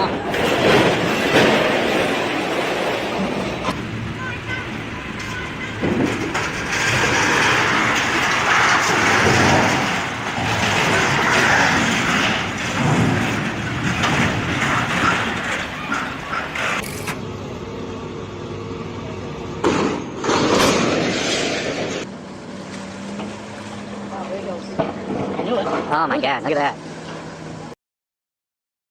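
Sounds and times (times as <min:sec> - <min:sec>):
heavy vehicle running: 0:00.0 - 0:27.8.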